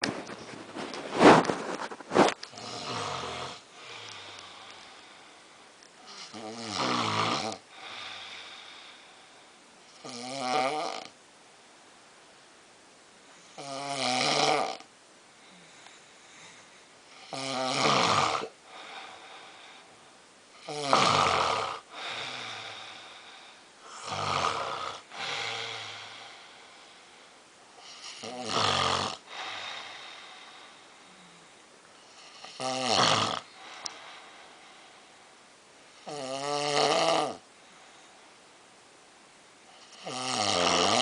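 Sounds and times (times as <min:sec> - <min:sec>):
person snoring loudly: 0:02.2 - 0:04.7, 0:06.0 - 0:08.5, 0:10.0 - 0:11.1, 0:13.6 - 0:14.9, 0:17.2 - 0:19.0, 0:20.6 - 0:23.1, 0:23.9 - 0:26.5, 0:27.9 - 0:30.2, 0:32.2 - 0:33.8, 0:36.0 - 0:37.4, 0:39.8 - 0:41.0
quiet breaths out: 0:15.3 - 0:17.1, 0:33.5 - 0:35.4.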